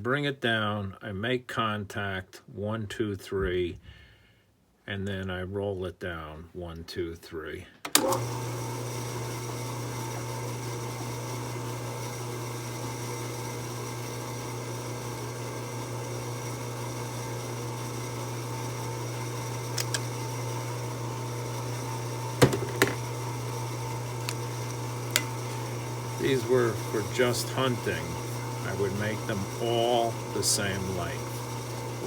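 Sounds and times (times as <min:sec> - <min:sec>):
drill press motor running: 0:08.0 - 0:32.0
sharp clicks: 0:19.7 - 0:20.1.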